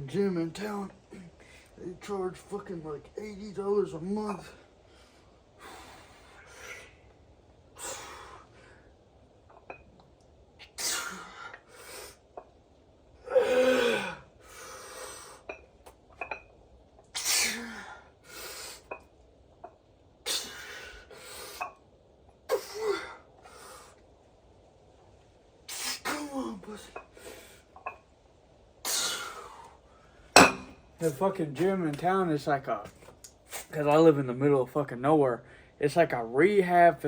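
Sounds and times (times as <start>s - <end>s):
man breathing hard and grunting: 13.3s - 15.4s.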